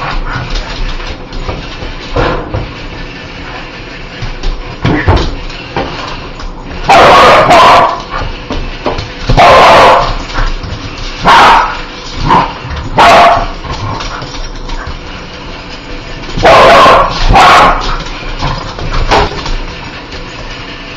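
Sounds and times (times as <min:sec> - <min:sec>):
dog barking loudly: 0:06.9 - 0:08.1, 0:09.4 - 0:10.2, 0:11.2 - 0:13.6, 0:16.4 - 0:18.0.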